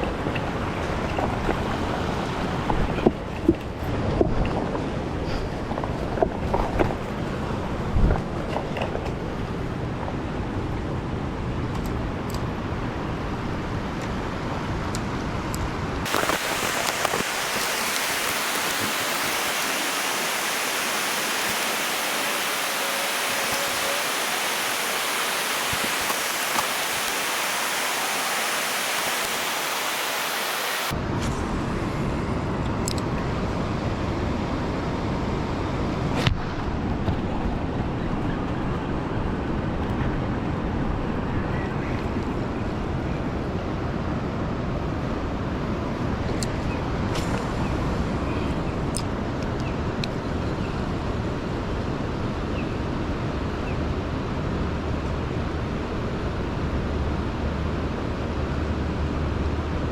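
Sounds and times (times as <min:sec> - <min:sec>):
wind rumble on microphone: 0:00.0 - 0:29.9, 0:30.9 - 0:59.9
rushing water hiss: 0:16.1 - 0:31.0.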